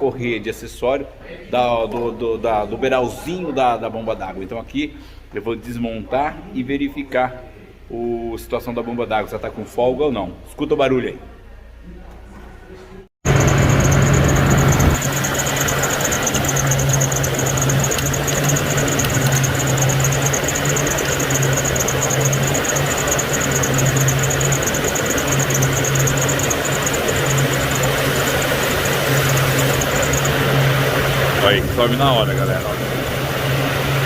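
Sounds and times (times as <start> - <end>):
engine running: 13.2 - 34.0
high-pitched whine: 13.3 - 34.0.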